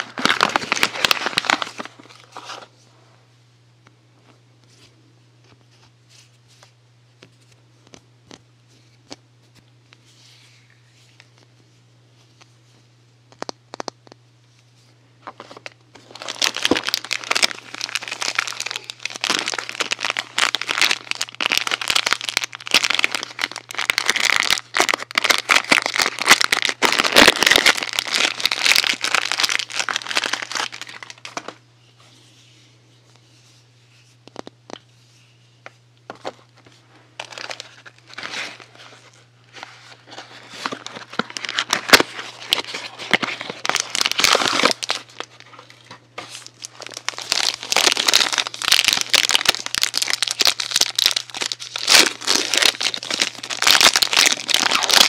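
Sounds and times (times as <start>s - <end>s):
wrapping crinkling and tearing: 0.0s - 2.7s, 15.3s - 31.6s, 36.1s - 55.0s.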